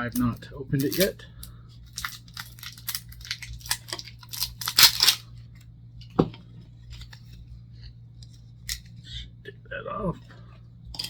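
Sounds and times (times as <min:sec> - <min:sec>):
bottle seal tearing: 0:02.6 - 0:05.2.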